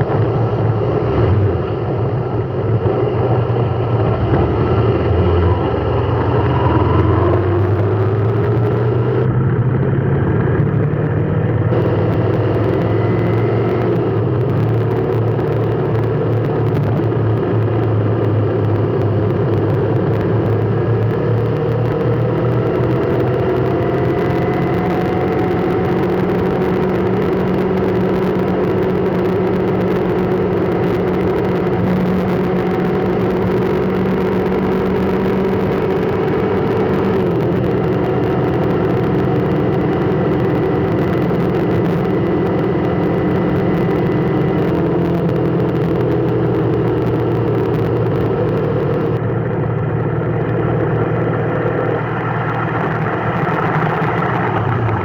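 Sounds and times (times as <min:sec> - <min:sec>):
road noise: 0:00.0 - 0:55.0
vehicle engine hum: 0:00.0 - 0:55.0.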